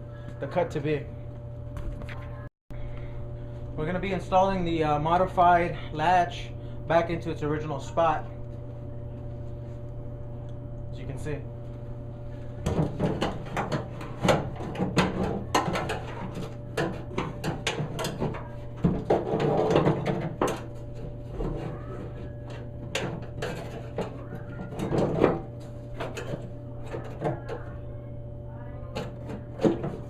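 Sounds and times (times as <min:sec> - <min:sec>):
steady low hum: 0:00.0 - 0:30.0
metal clicks and rattles: 0:12.7 - 0:20.8.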